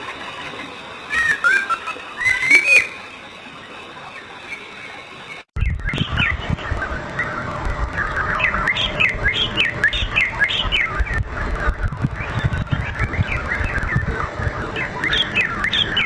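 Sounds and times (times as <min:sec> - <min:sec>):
low rumbling noise: 0:05.6 - 0:16.0
small birds chirping: 0:08.0 - 0:16.0.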